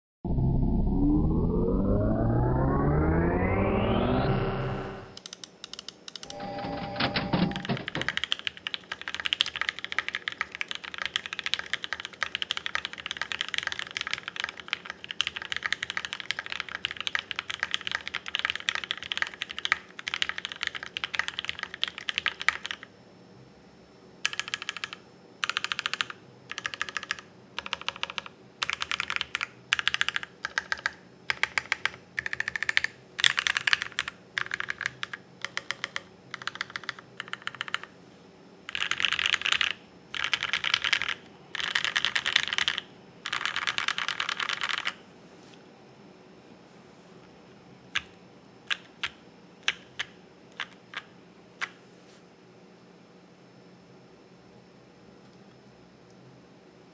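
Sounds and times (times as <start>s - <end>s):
keyboard typing: 4.6s - 22.9s, 24.2s - 37.9s, 38.7s - 45.0s, 48.0s - 51.8s.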